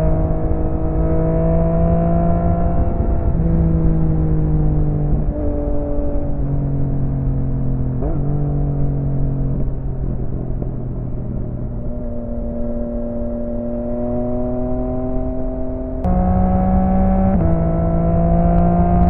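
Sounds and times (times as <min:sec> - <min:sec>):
motorcycle engine running: 0:14.3 - 0:19.0.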